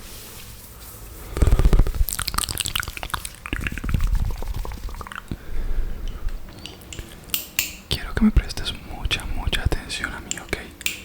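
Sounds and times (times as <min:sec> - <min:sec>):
wet mouth sounds: 0:01.3 - 0:07.3.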